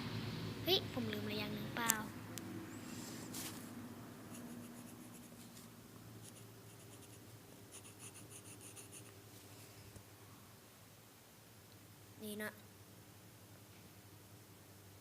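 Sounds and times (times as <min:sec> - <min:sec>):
drawing tool scratching paper: 0:04.3 - 0:05.6, 0:06.2 - 0:09.1.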